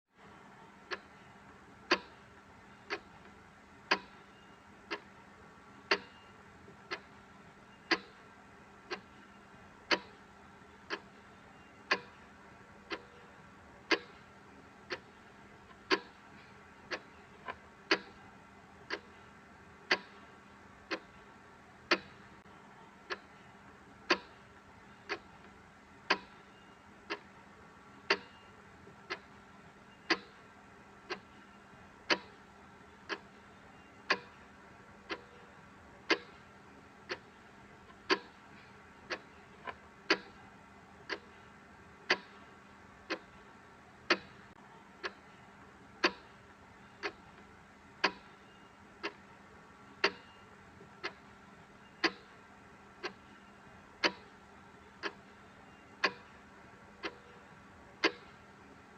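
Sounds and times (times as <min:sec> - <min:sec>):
faint background hum: 0:00.1 - 0:58.9
clock ticking: 0:00.9 - 0:05.1, 0:05.9 - 0:07.2, 0:07.8 - 0:27.4, 0:28.1 - 0:40.4, 0:41.0 - 0:58.9.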